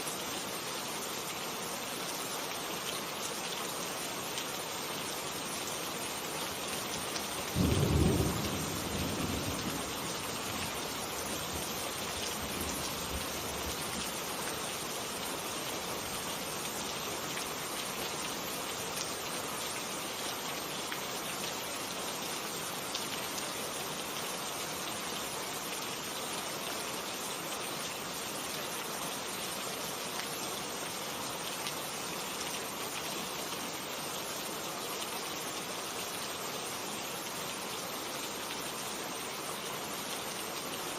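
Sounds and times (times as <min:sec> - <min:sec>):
steady rain falling: 0:00.0 - 0:40.9
thunder clap rumbling: 0:07.6 - 0:10.4.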